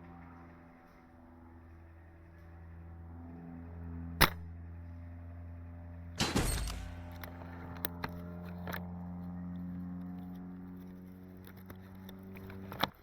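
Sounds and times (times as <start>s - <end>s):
airsoft rifle shot: 6.2s - 7.3s
short clatter: 6.2s - 7.3s.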